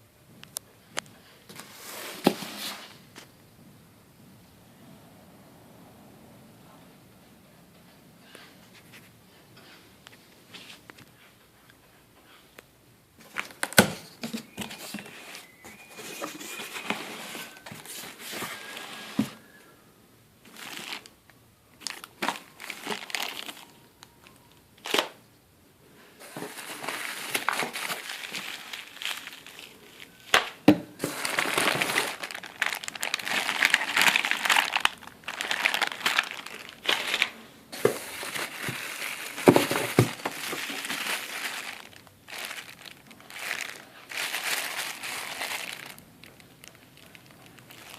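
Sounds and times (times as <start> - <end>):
packaging crinkling and rustling: 13.2 - 19.5, 20.4 - 25.2, 26.2 - 47.9.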